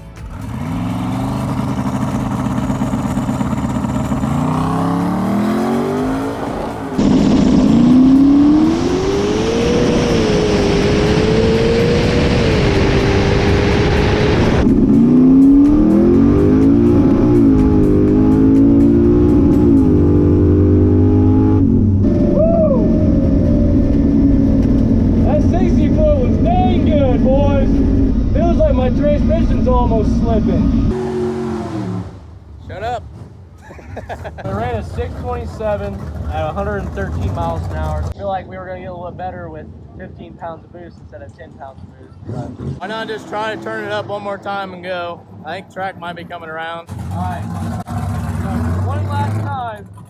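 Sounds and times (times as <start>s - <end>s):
car engine accelerating: 0.0s - 38.2s, 41.9s - 50.0s
loud rushing noise: 1.6s - 20.6s.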